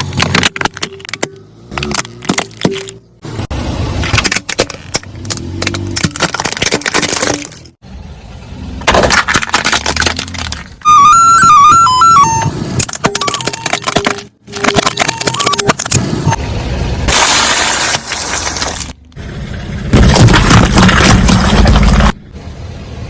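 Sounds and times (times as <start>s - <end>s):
tyre crushing brittle objects: 0.0s - 3.1s, 4.0s - 7.8s, 8.8s - 10.8s, 12.8s - 16.0s, 19.9s - 22.2s
car engine running low: 18.8s - 23.0s.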